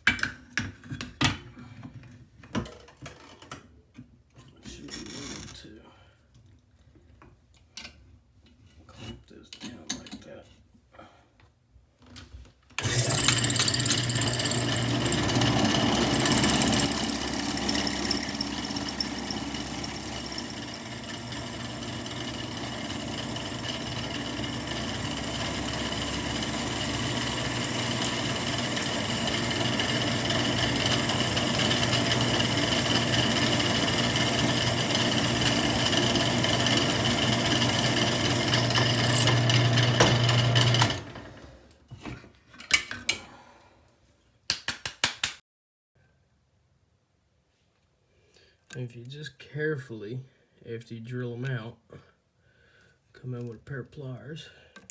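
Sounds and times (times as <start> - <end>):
electric drill drilling steel: 12.8 - 41.1.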